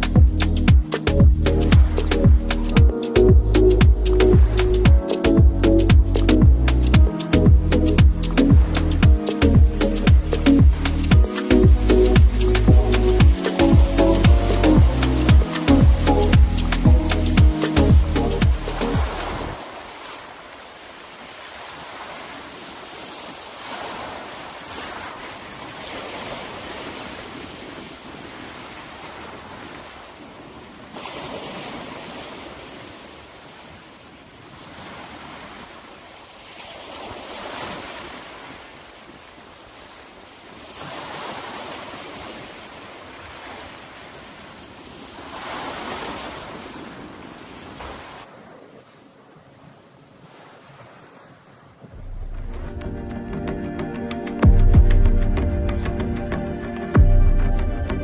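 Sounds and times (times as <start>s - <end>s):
wind on microphone: 0.0s - 19.6s
waves breaking on a beach: 0.0s - 52.7s.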